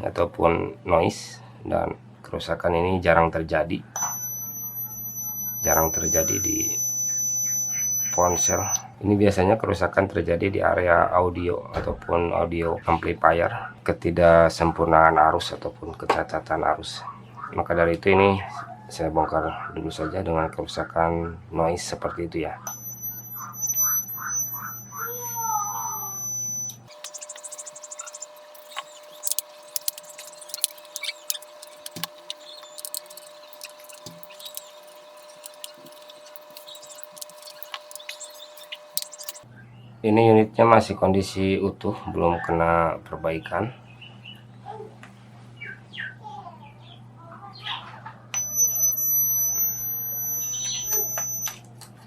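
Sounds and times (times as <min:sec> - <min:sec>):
faint steady tone: 0:04.0 - 0:08.8, 0:22.7 - 0:39.4, 0:48.4 - 0:51.6.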